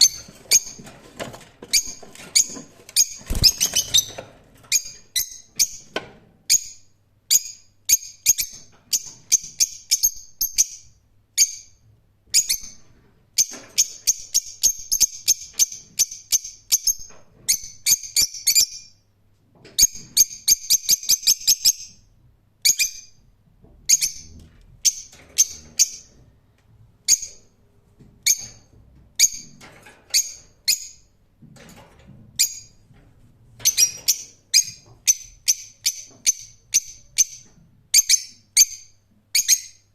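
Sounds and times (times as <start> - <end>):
lovebirds chirping: 1.7 - 5.8.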